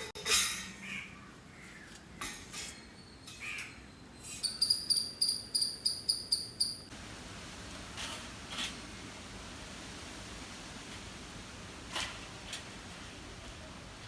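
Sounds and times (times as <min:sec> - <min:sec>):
bird chirping: 0:02.8 - 0:06.9.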